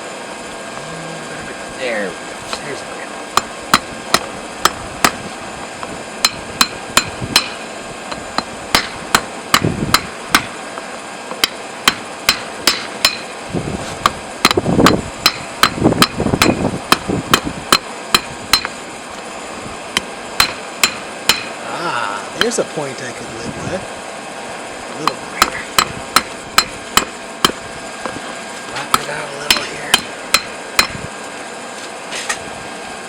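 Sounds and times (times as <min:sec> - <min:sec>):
hammer ringing on anvil: 0:06.2 - 0:10.6, 0:11.4 - 0:13.3, 0:14.8 - 0:18.8, 0:20.0 - 0:21.6, 0:25.0 - 0:27.6, 0:28.9 - 0:31.0.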